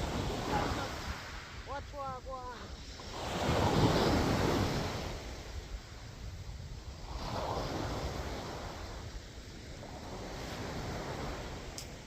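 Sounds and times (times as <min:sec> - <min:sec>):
waves washing on shore: 0:00.0 - 0:12.0
wind on microphone: 0:00.0 - 0:12.0.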